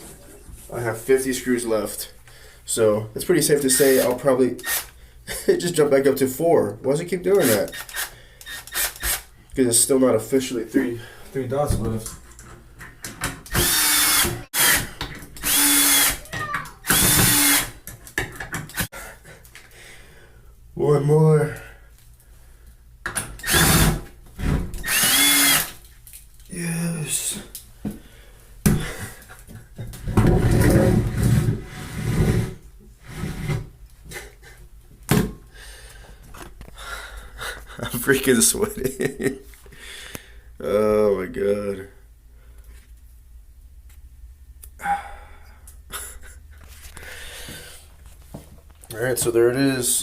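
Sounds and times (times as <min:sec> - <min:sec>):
cordless screwdriver driving screws: 0:07.4 - 0:09.3, 0:13.5 - 0:16.2, 0:16.8 - 0:17.7, 0:24.8 - 0:25.7
rubbing and handling noise: 0:46.3 - 0:49.5.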